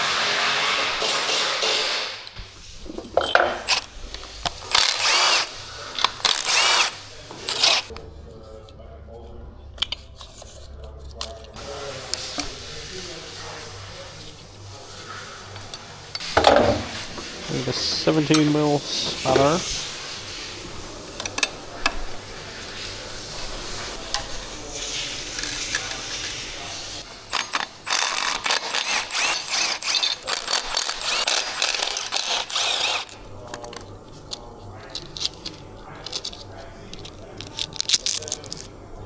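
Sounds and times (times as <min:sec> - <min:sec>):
ratchet wrench clicking: 0:03.6 - 0:07.9, 0:27.3 - 0:36.4
tool clicks and knocks: 0:16.2 - 0:19.5.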